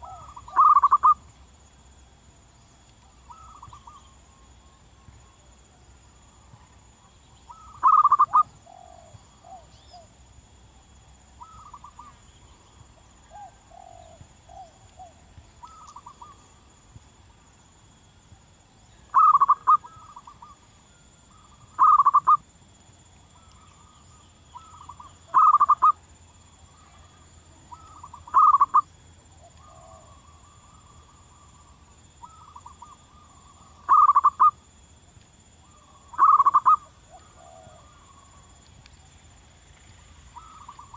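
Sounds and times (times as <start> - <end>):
doves cooing: 0.0 - 1.2, 7.5 - 10.1, 19.1 - 20.6, 21.3 - 22.4, 24.6 - 25.9, 27.7 - 28.8, 29.4 - 34.5, 35.7 - 38.4.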